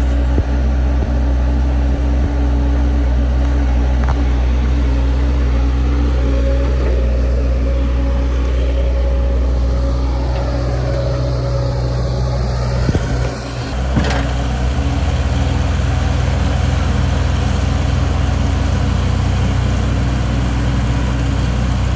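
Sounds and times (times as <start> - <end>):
diesel engine running: 0.0 - 21.9
faint higher tone: 3.0 - 16.8.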